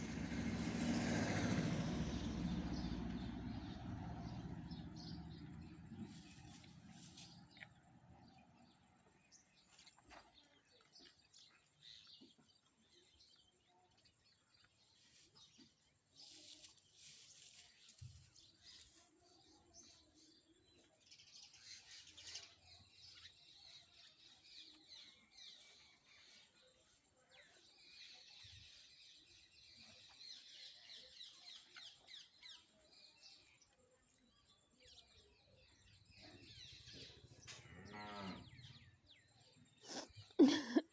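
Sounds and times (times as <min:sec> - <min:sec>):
small birds chirping: 0:01.4 - 0:40.9.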